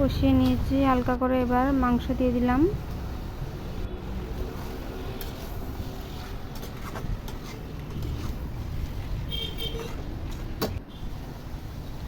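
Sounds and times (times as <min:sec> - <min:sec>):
spatula scraping pan: 0:04.6 - 0:10.6.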